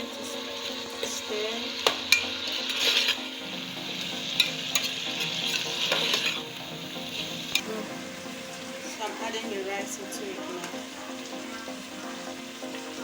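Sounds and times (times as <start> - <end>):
sauce bubbling and sizzling: 0.0 - 13.0
spoon stirring in a pot: 0.6 - 6.5
spoon clicking against pot: 1.8 - 2.4.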